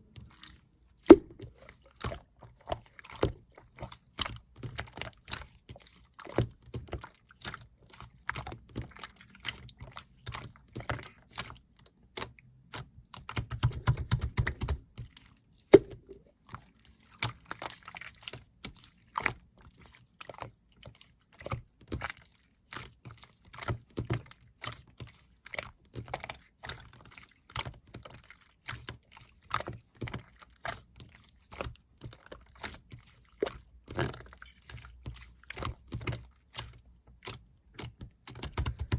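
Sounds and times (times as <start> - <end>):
irregular clicks and taps: 37.8 - 38.9.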